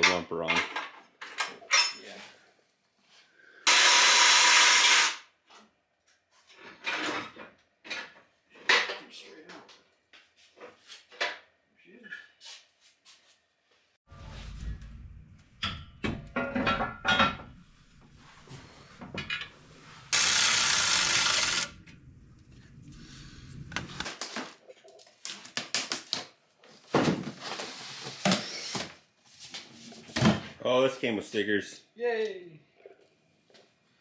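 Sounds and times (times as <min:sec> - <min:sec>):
loud hiss-like rasp: 0:03.7 - 0:05.2.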